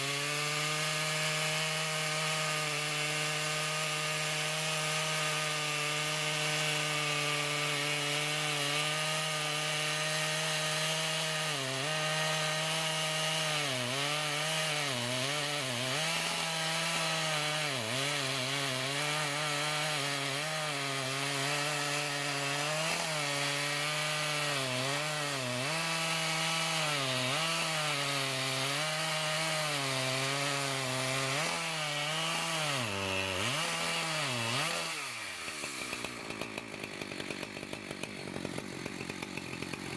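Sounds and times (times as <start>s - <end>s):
chainsaw cutting through trunk: 0.0s - 39.9s.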